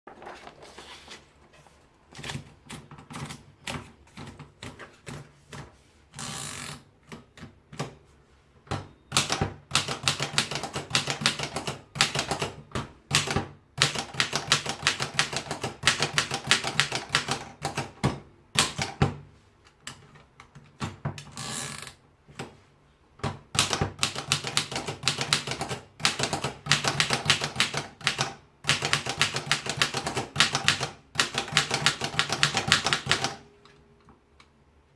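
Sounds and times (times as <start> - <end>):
typewriter typing: 8.7 - 19.1, 23.2 - 33.4.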